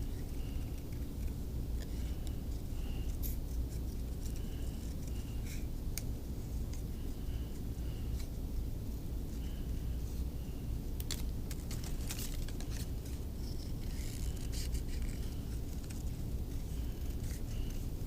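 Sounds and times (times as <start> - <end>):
steady low hum: 0.0 - 18.0
paper rustling: 11.0 - 18.0.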